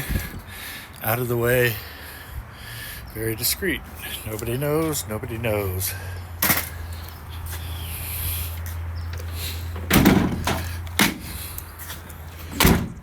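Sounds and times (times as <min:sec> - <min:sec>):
latch click: 0:09.1 - 0:11.3
truck lid thudding shut: 0:09.8 - 0:11.4, 0:12.5 - 0:13.0.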